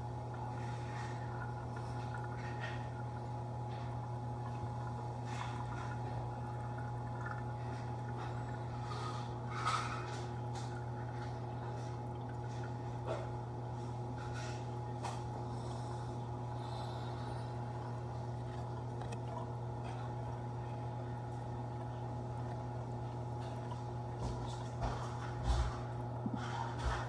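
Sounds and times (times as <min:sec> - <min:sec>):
water trickling and dripping: 0:00.0 - 0:15.4
pump hum: 0:00.0 - 0:27.0.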